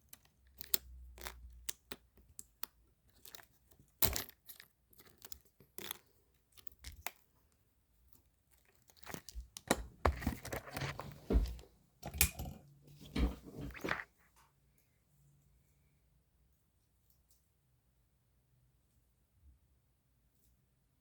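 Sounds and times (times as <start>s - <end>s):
rustling and crinkling handling: 8.4s - 11.8s, 12.9s - 14.4s.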